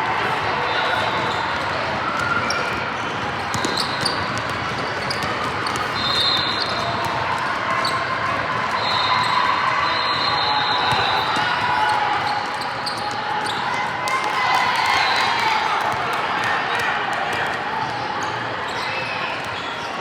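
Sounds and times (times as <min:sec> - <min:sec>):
crowd chatter: 0:00.0 - 0:20.0
sneaker squeaks: 0:00.8 - 0:13.8, 0:17.8 - 0:20.0
basketball bouncing on court: 0:02.1 - 0:08.7.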